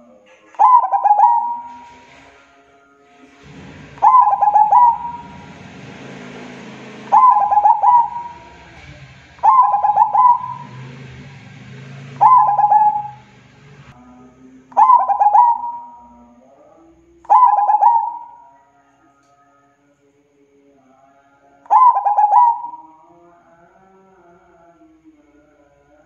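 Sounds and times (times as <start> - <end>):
dove cooing: 0.0 - 2.2, 3.4 - 5.4, 7.1 - 8.6, 9.4 - 10.8, 12.2 - 13.2, 14.8 - 16.0, 17.3 - 18.6, 21.7 - 22.9.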